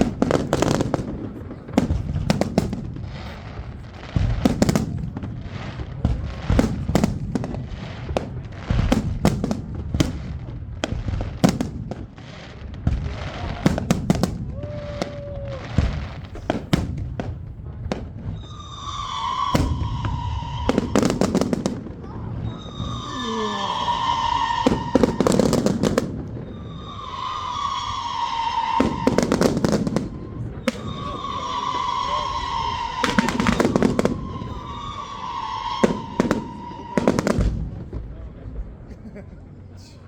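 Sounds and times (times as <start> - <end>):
fireworks bangs and crackling: 0.0 - 39.8
high firework whistle: 13.1 - 16.6, 18.3 - 37.6.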